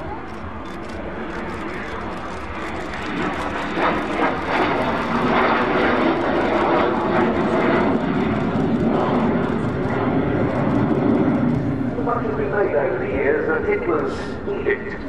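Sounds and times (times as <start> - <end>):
jet plane flying past: 0.0 - 15.0.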